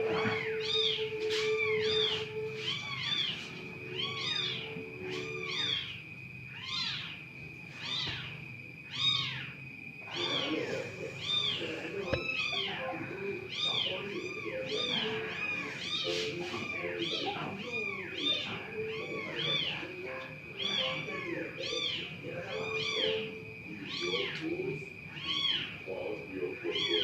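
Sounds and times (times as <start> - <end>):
cat meowing: 0.0 - 7.2, 7.8 - 24.5, 25.1 - 25.8, 26.7 - 27.0
faint high whine: 0.0 - 27.0.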